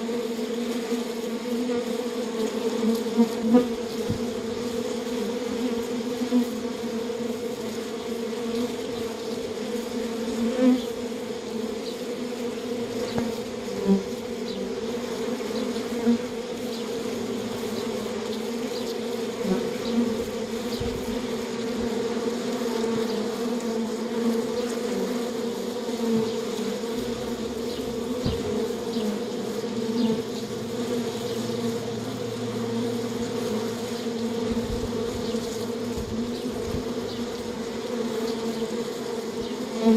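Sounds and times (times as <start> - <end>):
bees buzzing: 0.0 - 39.9.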